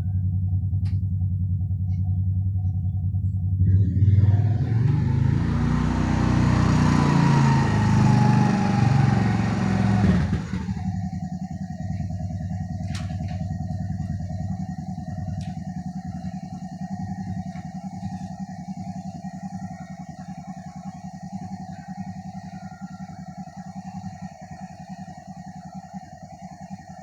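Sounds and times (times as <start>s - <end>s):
faint whine: 0.0s - 27.0s
atv engine revving: 3.6s - 11.1s.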